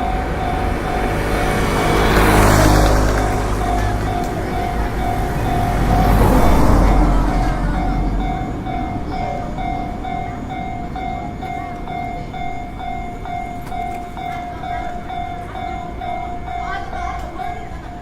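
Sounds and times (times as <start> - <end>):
level crossing warning bell: 0.0 - 18.0
low rumble: 2.8 - 11.1.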